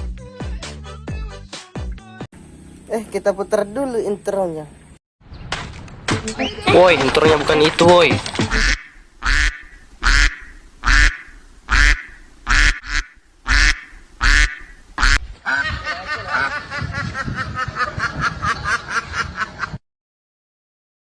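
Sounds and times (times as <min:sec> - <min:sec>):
duck quacking: 0:06.6 - 0:18.1.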